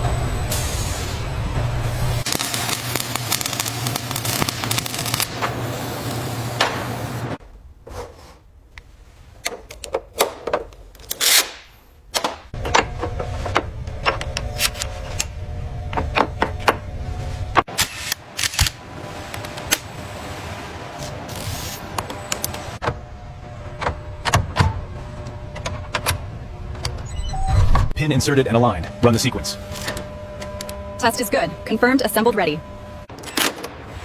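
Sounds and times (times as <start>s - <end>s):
steady machinery hum: 12.5s - 27.0s, 27.9s - 34.0s.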